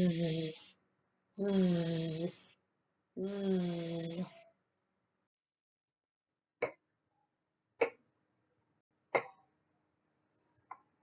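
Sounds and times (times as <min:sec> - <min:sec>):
woman saying breathy consonant: 0:00.0 - 0:00.6.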